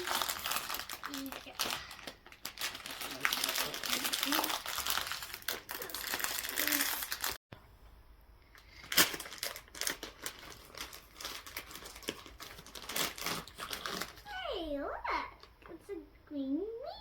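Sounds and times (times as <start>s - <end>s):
packaging crinkling and tearing: 0.0s - 7.4s, 8.6s - 14.3s.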